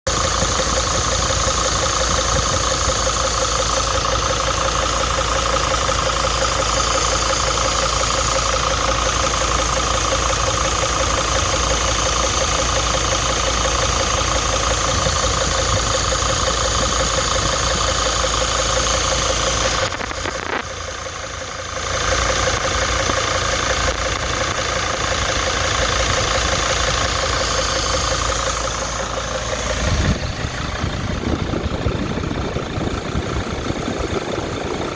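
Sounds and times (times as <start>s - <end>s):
starter motor cranking diesel engine: 0.0s - 34.9s.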